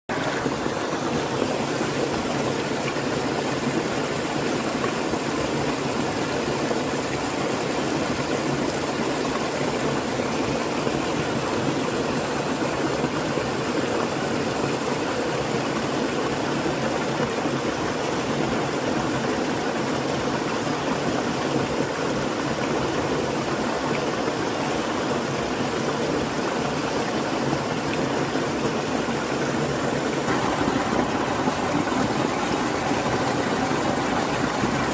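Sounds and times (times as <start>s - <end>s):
water rushing: 0.1s - 34.9s.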